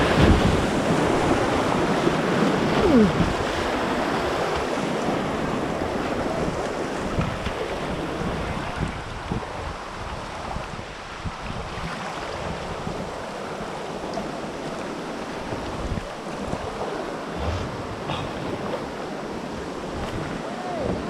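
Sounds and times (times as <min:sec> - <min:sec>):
rushing whitewater rapids: 0:00.0 - 0:21.0
wind buffeting microphone: 0:15.4 - 0:21.0.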